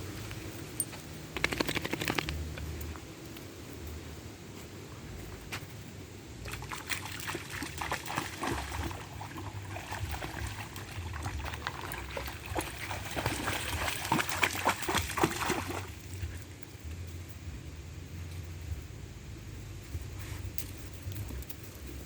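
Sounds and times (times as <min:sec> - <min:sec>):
steady low rumble: 0:00.0 - 0:22.0
water splashing: 0:06.4 - 0:16.3.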